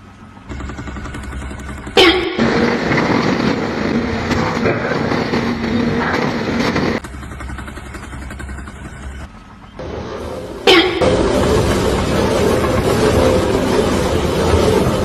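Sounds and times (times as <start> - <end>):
engine running loudly: 6.0 - 15.0.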